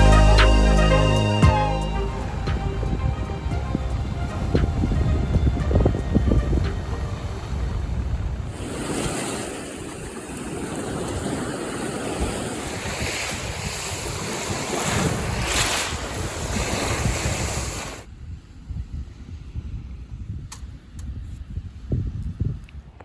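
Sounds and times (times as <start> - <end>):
sea waves washing ashore: 0.0 - 18.1
wind buffeting microphone: 2.1 - 23.0.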